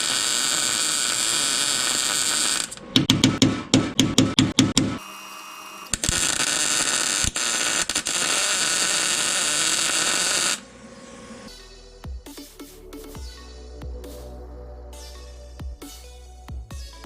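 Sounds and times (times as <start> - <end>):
welding arc hissing: 0.0 - 2.9, 5.0 - 11.5.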